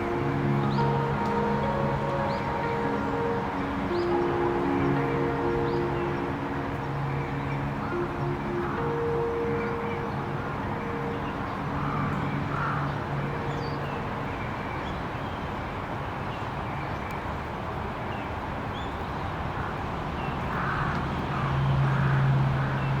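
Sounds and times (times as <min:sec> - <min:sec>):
low drone: 0:00.0 - 0:14.4.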